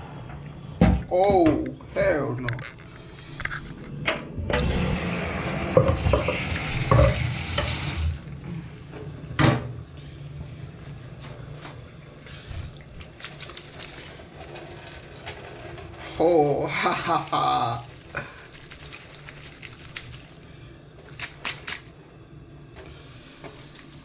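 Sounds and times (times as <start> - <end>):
water splashing from pot: 12.9 - 15.2.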